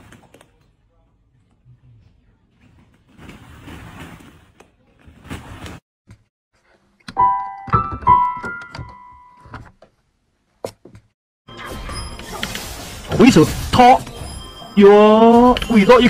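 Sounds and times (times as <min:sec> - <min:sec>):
piano-like keyboard notes: 0:07.1 - 0:09.5.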